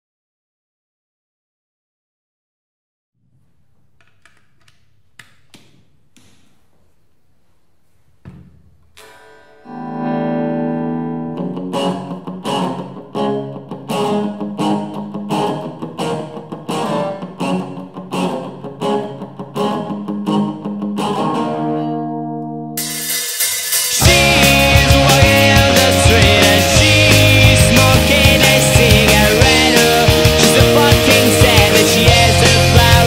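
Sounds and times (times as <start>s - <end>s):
guitar chord ringing: 9.0s - 33.0s
rhythmic guitar strokes: 9.0s - 33.0s.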